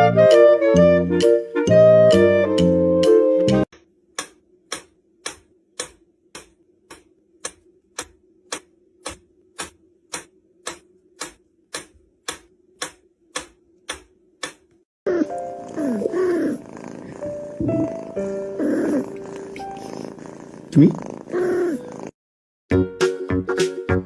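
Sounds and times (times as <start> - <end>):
regular sharp ticking: 3.7 - 14.9.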